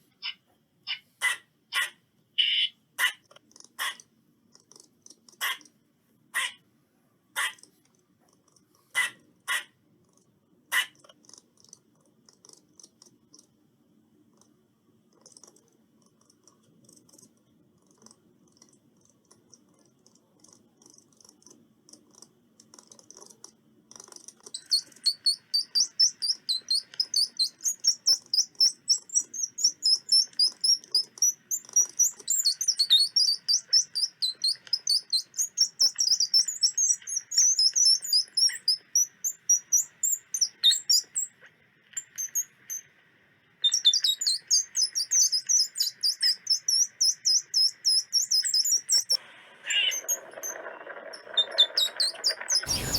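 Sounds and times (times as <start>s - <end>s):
squirrel chattering: 0.2s - 4.0s, 4.6s - 5.7s, 6.4s - 6.6s, 7.4s - 7.7s, 9.0s - 11.4s, 23.9s - 41.3s.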